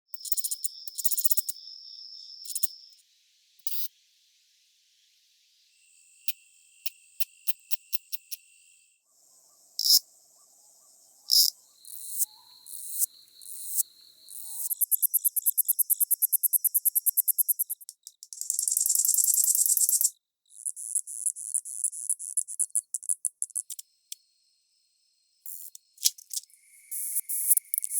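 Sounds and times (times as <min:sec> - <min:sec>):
katydid ticks: 0:00.1 - 0:03.0, 0:03.6 - 0:03.9, 0:06.0 - 0:08.7, 0:09.8 - 0:10.1, 0:11.3 - 0:24.3, 0:25.4 - 0:27.9.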